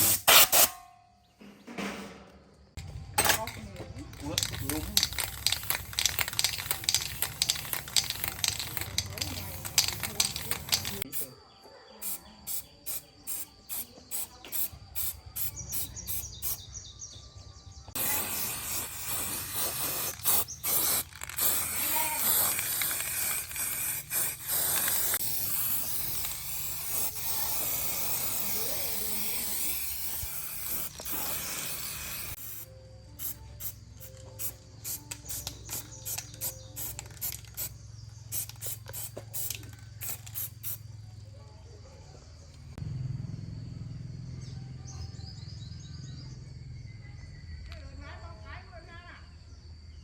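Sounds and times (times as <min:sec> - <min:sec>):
compressed air spraying: 0:00.0 - 0:00.7, 0:04.4 - 0:11.4, 0:12.0 - 0:16.7, 0:18.0 - 0:40.8
regular clicks: 0:03.4 - 0:11.1.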